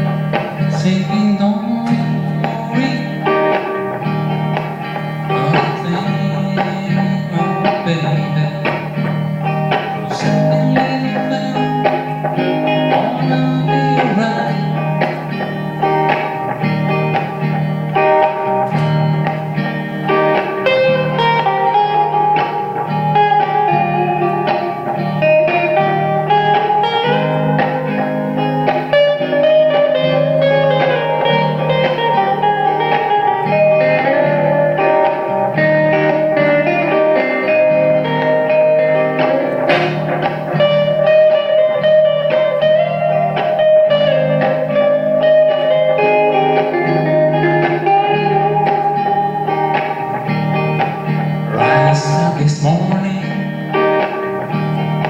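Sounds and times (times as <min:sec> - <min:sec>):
lead guitar melody with bends: 0:00.0 - 0:55.0
rhythm guitar chords: 0:00.0 - 0:55.0.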